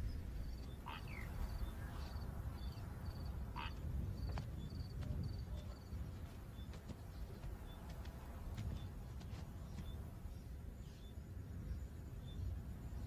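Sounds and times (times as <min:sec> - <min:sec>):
rising bird calls: 0:00.0 - 0:04.8
high insect chirp: 0:00.0 - 0:07.9
steady low rumble: 0:00.0 - 0:13.0.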